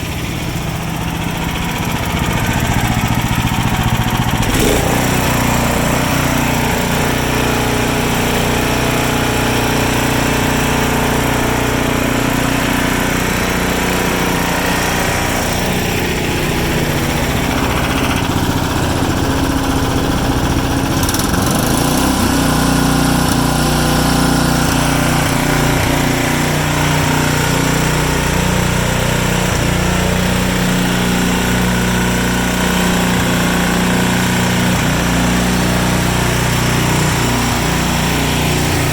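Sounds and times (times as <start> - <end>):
snowblower engine running: 0.0 - 38.9.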